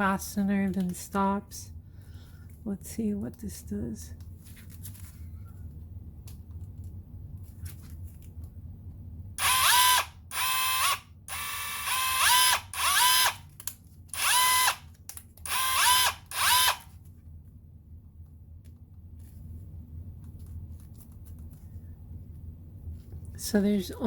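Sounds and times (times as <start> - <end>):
impact wrench spinning with whine: 9.4 - 13.5, 14.1 - 16.9.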